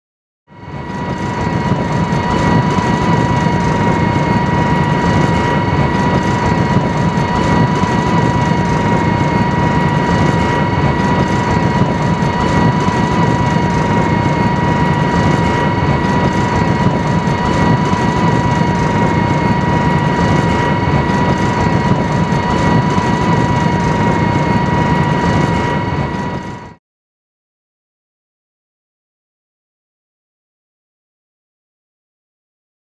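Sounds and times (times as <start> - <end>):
high mechanical whine: 0.6 - 26.8
tank engine rumble: 0.6 - 26.8.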